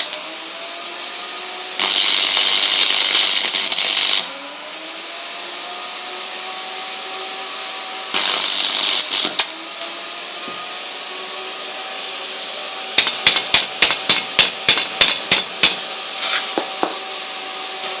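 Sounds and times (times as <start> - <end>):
welding arc crackling and hissing: 0.0 - 0.3, 1.8 - 4.3, 8.1 - 10.0, 12.9 - 16.9, 17.6 - 18.0
welding transformer humming: 0.0 - 0.3, 1.7 - 4.4, 8.0 - 10.9, 12.9 - 18.0.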